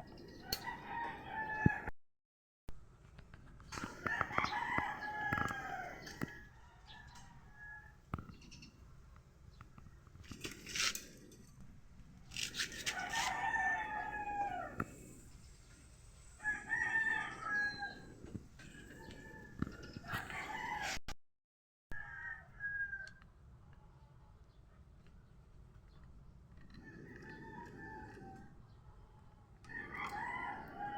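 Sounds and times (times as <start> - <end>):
roosters crowing: 0.0 - 1.9, 3.8 - 8.1, 12.4 - 15.2, 16.3 - 21.0, 26.7 - 28.7, 29.6 - 30.9.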